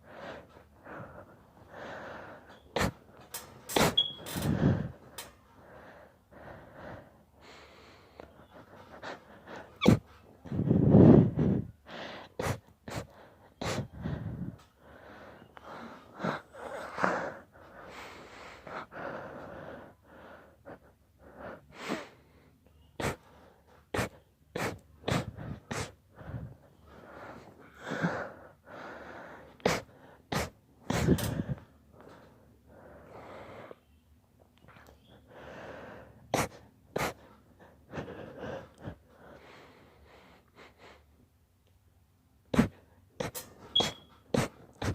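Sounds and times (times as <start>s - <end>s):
wheezy gasps: 0.0s - 33.9s, 34.7s - 41.2s, 42.5s - 44.9s
sniffing: 0.1s - 3.1s, 6.5s - 22.2s, 23.0s - 32.2s, 35.4s - 41.1s, 42.5s - 44.9s
person sneezing: 3.7s - 4.0s, 24.0s - 25.9s, 29.7s - 31.4s, 42.6s - 44.9s.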